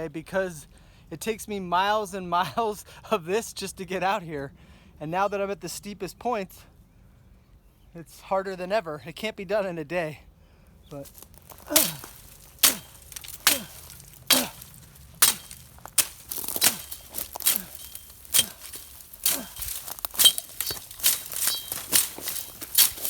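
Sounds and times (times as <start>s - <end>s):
footsteps crunching on gravel: 10.9s - 23.0s.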